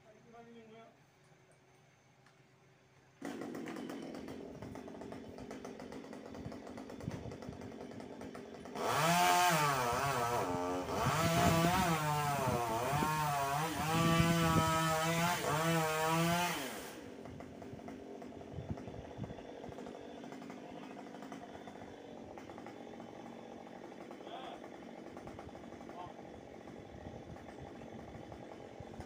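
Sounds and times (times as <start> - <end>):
chainsaw cutting wood: 3.2 - 29.0.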